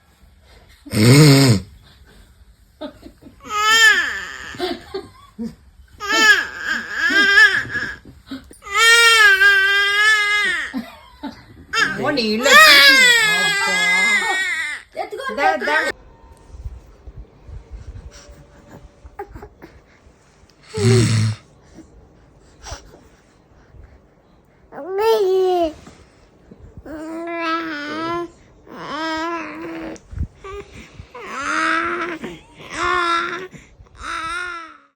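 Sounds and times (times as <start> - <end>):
loud snore: 0.9 - 1.7, 20.7 - 21.4
baby crying: 3.5 - 4.7, 6.0 - 8.0, 8.6 - 10.8, 11.8 - 16.0, 20.8 - 21.4, 26.9 - 30.6, 31.2 - 34.9
faint breathy sound: 15.9 - 27.2, 29.8 - 34.3
low rasping vocal sound: 20.7 - 21.4.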